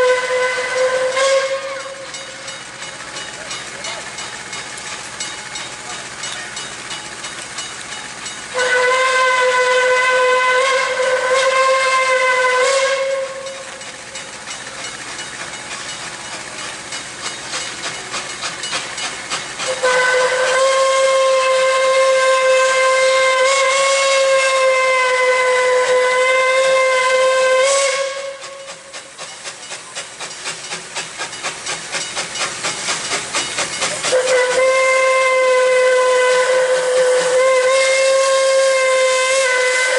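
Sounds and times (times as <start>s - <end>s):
steam locomotive whistle blasts: 0.0s - 2.6s, 8.5s - 13.9s, 19.6s - 30.1s, 33.8s - 39.9s
steam engine exhaust chuffing: 0.0s - 39.9s.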